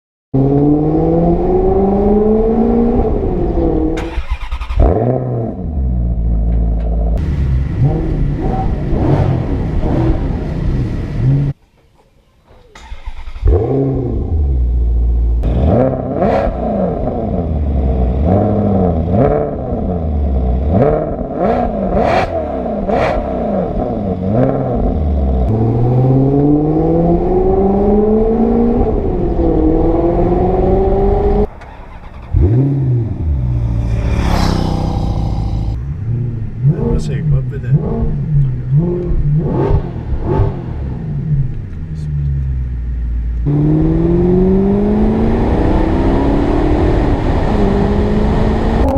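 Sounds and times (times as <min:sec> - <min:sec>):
car engine revving: 0:00.4 - 0:11.6, 0:12.8 - 0:48.9
exhaust cracks: 0:31.4 - 0:43.6.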